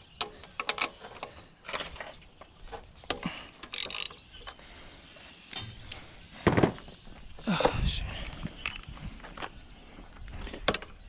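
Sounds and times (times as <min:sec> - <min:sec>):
metallic clicks and clinks of tools: 0:03.1 - 0:04.6.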